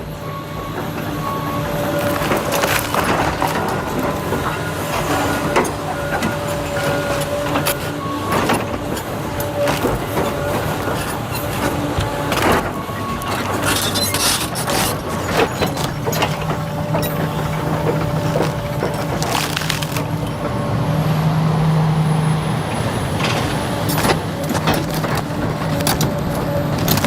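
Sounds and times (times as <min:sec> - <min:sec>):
wood cracking and splintering: 0:02.0 - 0:05.2, 0:11.8 - 0:20.3, 0:23.9 - 0:27.0.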